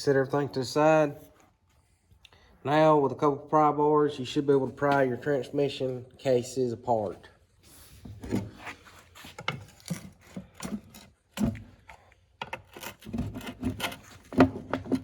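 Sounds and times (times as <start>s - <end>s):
pry bars clicking and scraping metal: 9.4s - 15.0s.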